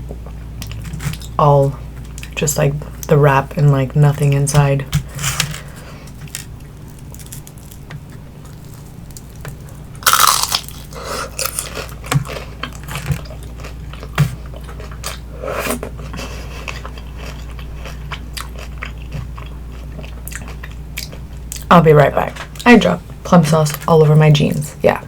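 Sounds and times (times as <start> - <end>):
chewing with crisp crackles: 0.0 - 4.4, 5.6 - 22.8
crunchy bite into spring roll: 8.5 - 12.0.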